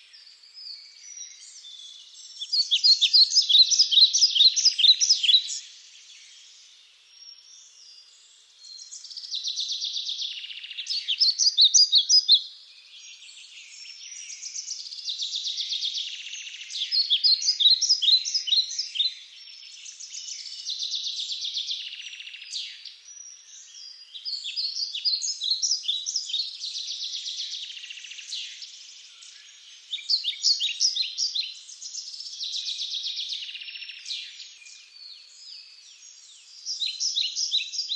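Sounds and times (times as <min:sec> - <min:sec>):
songbirds chirping: 0:00.0 - 0:37.9.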